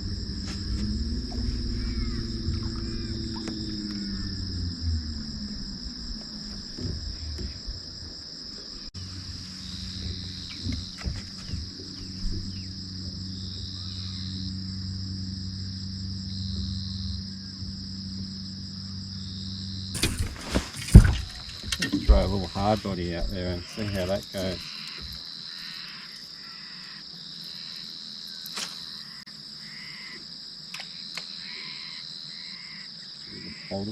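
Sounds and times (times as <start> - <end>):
low steady hum: 0.0 - 24.6
insects trilling: 0.0 - 33.9
intermittent insect trill: 0.0 - 33.9.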